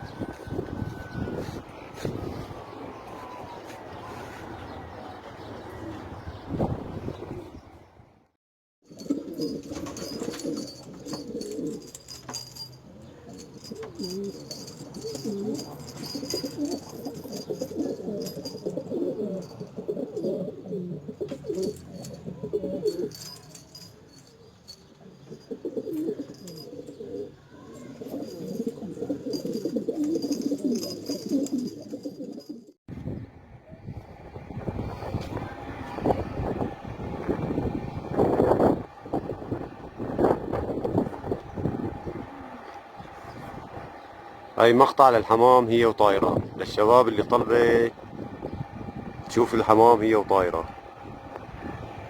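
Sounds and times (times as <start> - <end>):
pigeons cooing: 8.9 - 32.7, 41.6 - 44.4.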